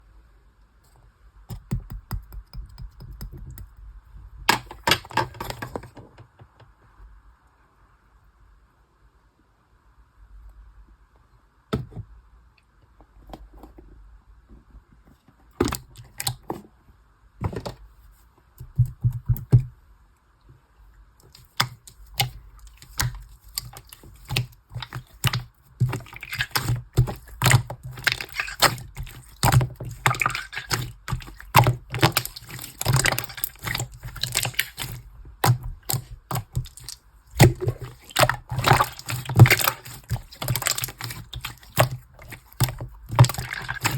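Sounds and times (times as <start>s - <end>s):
slime clicking and squishing: 1.5s - 3.8s, 21.2s - 43.9s.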